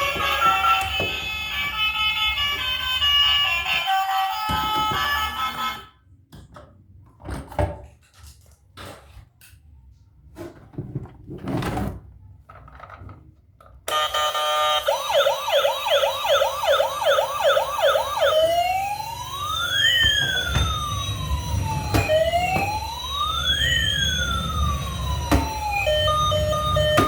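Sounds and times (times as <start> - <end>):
toy siren wailing: 0.0 - 5.9, 13.9 - 27.0.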